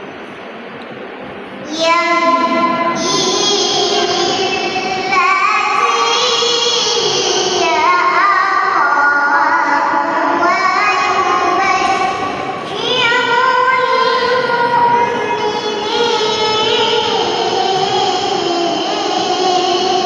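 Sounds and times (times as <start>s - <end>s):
girl chanting melodic recitation: 1.6s - 20.0s.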